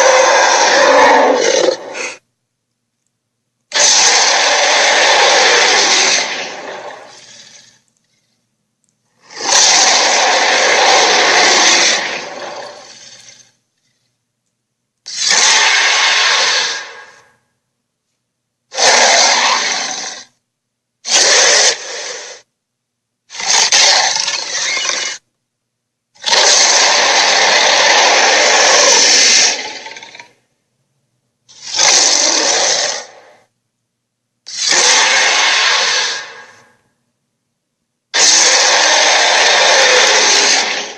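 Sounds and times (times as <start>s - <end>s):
dinosaur roars: 0.0s - 2.2s, 3.7s - 7.8s, 9.2s - 13.5s, 26.2s - 30.3s, 34.5s - 36.7s, 38.2s - 40.9s.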